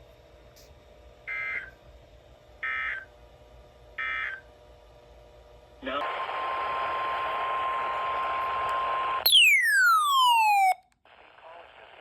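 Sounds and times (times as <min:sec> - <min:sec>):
electronic tone sweeping down: 0:09.3 - 0:10.8
weather radio alarm tone: 0:09.3 - 0:10.8.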